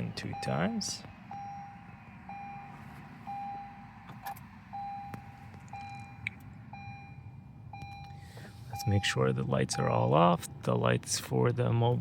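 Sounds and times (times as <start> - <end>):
low steady hum: 0.0 - 12.0
electronic warning chime beeping: 0.2 - 3.8, 4.7 - 10.0.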